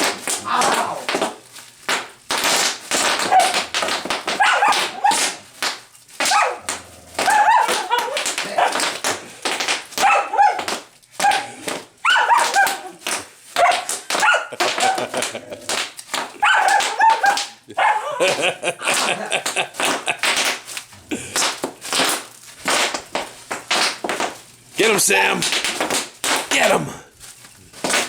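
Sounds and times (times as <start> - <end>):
bubble wrap popping: 0.0 - 28.0
dog barking and yipping: 3.2 - 5.5, 6.2 - 9.0, 9.9 - 15.5, 16.3 - 19.4.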